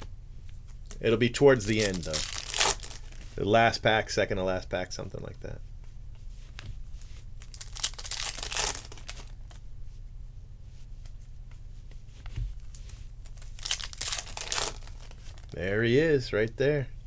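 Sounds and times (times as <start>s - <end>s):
low steady hum: 0.0s - 17.0s
card pack wrappers tearing and crinkling: 0.8s - 3.4s, 7.4s - 9.6s, 12.8s - 15.7s.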